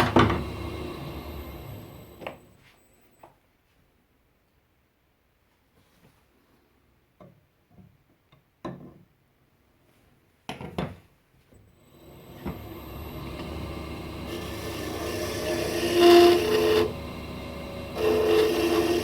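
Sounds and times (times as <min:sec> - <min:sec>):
electric motor humming and whining: 0:00.0 - 0:02.4, 0:11.8 - 0:19.0.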